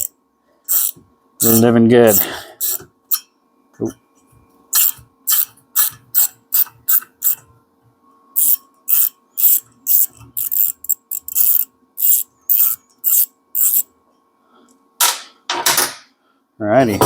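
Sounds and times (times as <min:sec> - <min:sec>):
hand ratchet clicking: 0:00.7 - 0:03.2, 0:04.8 - 0:07.4, 0:08.4 - 0:13.8.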